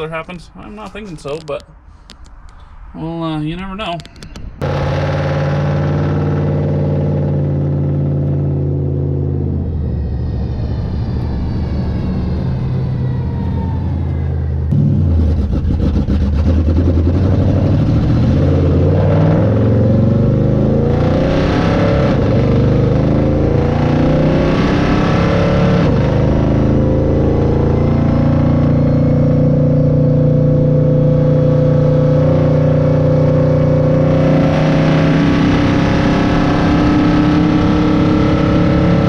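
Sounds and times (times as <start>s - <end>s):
car engine accelerating: 4.6s - 39.0s.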